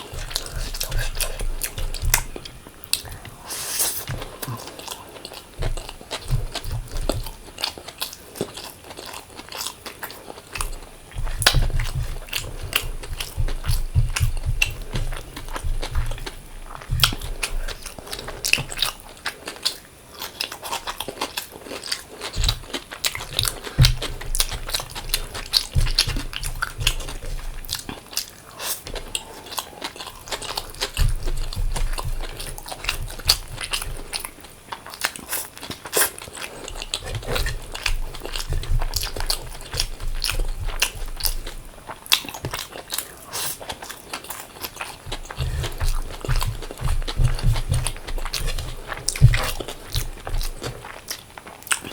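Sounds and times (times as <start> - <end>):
person chewing food: 0.0 - 51.9
low thuds: 11.2 - 18.0, 45.1 - 50.8.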